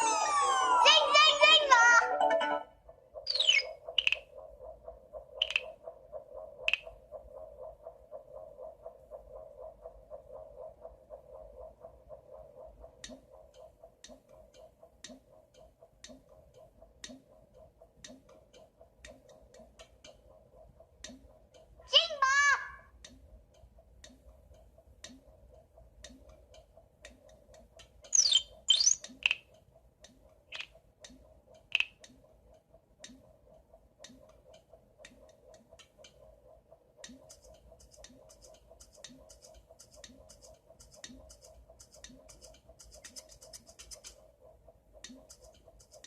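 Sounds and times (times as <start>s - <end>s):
faint rapid ticking: 2.7s - 46.0s
high squeaky chirps: 3.3s - 4.2s, 28.1s - 29.2s.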